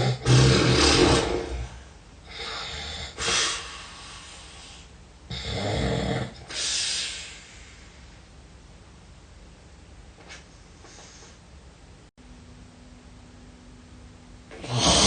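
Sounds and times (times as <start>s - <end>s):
person snoring heavily: 0.0s - 4.0s, 5.3s - 7.2s, 14.6s - 15.0s
hissing breaths: 0.0s - 5.4s, 6.4s - 8.3s.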